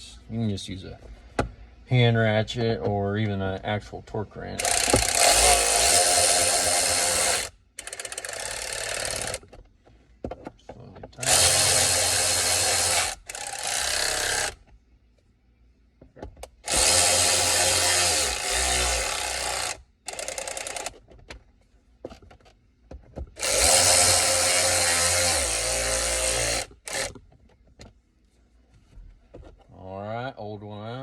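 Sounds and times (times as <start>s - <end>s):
electric ratchet running: 4.6s - 9.4s, 11.2s - 14.6s, 16.6s - 21.0s, 23.4s - 27.2s
rapid ratchet clicking: 4.6s - 9.4s, 11.2s - 14.6s, 16.6s - 21.0s, 23.4s - 27.2s.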